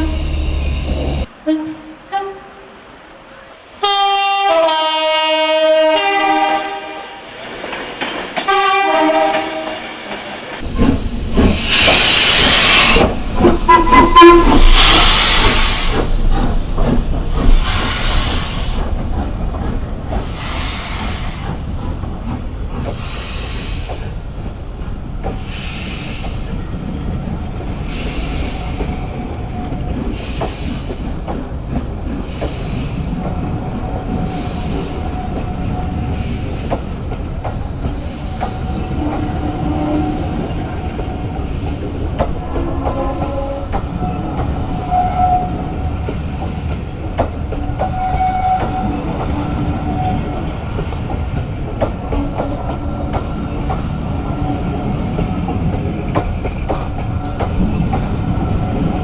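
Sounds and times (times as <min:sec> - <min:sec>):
two-tone train horn: 0:01.3 - 0:02.8, 0:03.8 - 0:07.2, 0:08.4 - 0:10.0, 0:13.7 - 0:15.1, 0:38.7 - 0:40.6, 0:42.4 - 0:45.7, 0:47.8 - 0:50.5
train wheels clattering: 0:10.5 - 0:59.0.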